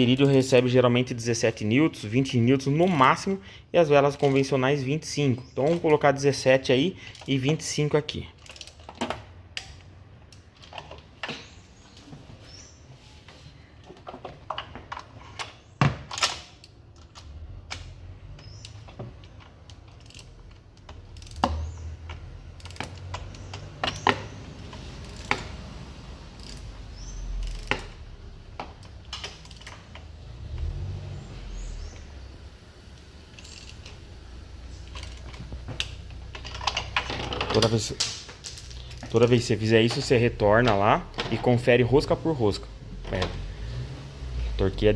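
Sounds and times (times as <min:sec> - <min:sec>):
ratchet wrench clicking: 0:18.6 - 0:30.7, 0:33.0 - 0:34.1, 0:34.7 - 0:37.0.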